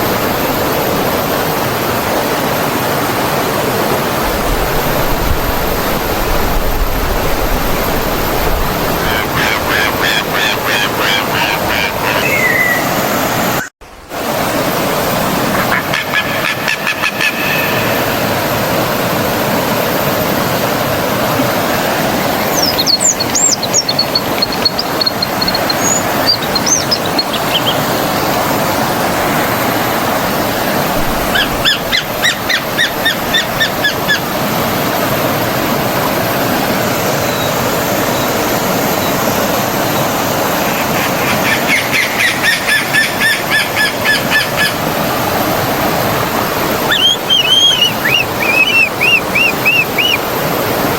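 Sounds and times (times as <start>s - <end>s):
stream flowing: 0.0s - 50.9s
birds whistling gliding notes: 4.2s - 13.7s, 15.5s - 18.6s, 21.6s - 34.8s, 37.0s - 50.9s
birds chirping rapidly: 8.6s - 13.7s, 22.1s - 28.4s, 31.2s - 34.4s, 39.9s - 44.8s, 46.8s - 50.3s.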